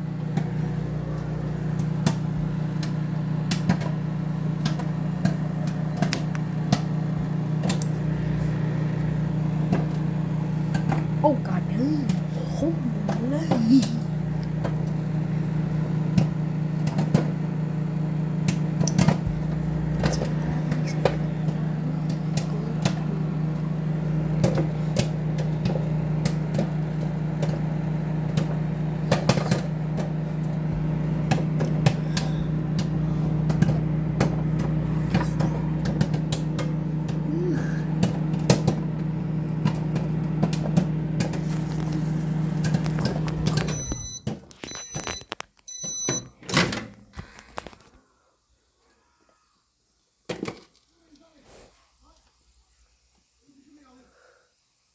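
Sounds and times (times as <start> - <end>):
popcorn popping: 0.2 - 8.2, 13.0 - 45.4
steady low hum: 17.6 - 44.2.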